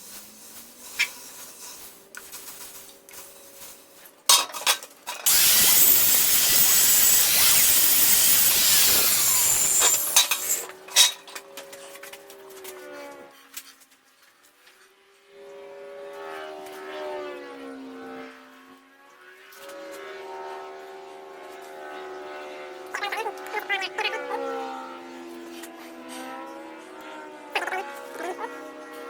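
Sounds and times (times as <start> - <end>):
power tool grinding steel: 5.2 - 10.8.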